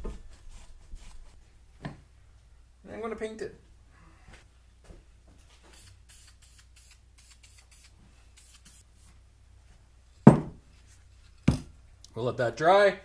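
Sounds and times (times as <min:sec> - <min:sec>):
spray paint can hissing: 0:05.7 - 0:08.8.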